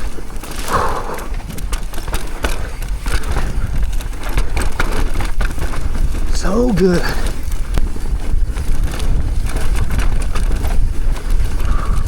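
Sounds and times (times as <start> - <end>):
bike rattling and clicking: 0.0 - 12.0
bike tyres on dirt: 0.0 - 12.0
wind buffeting microphone: 0.0 - 12.0.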